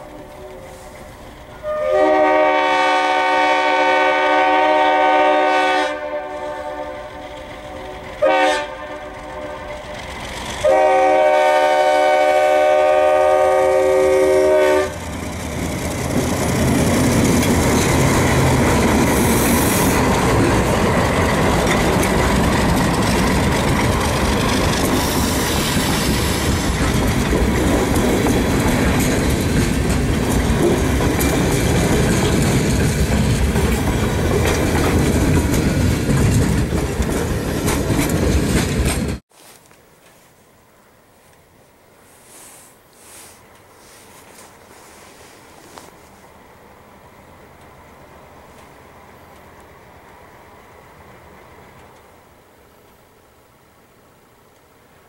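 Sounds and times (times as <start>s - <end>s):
locomotive engine rumbling: 0.0s - 39.2s
locomotive horn blast: 1.6s - 9.8s, 10.6s - 15.0s
train wheels clacking on rails: 6.9s - 11.3s, 14.8s - 39.2s.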